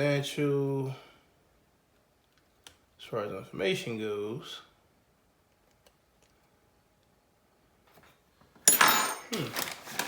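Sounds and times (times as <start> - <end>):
rustling and scraping of parts: 7.8 - 10.0
metallic clink: 8.7 - 9.3.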